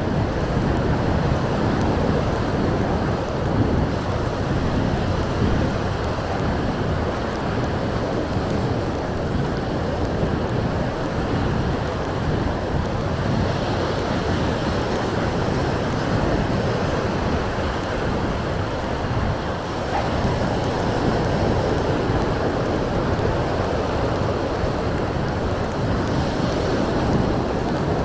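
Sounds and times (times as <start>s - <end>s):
surf washing onto beach: 0.0s - 28.0s
wind on microphone: 0.0s - 28.0s.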